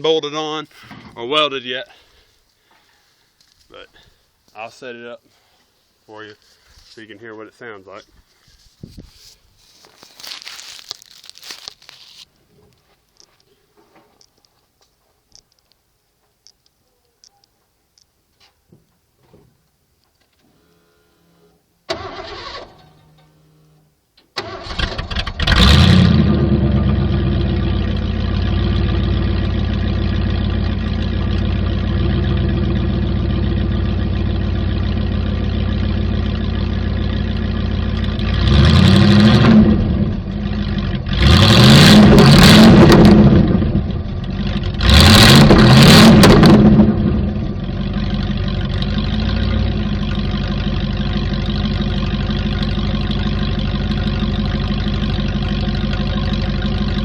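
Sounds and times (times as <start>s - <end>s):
truck engine starting and idling: 21.9s - 57.0s
engine revving: 24.4s - 57.0s.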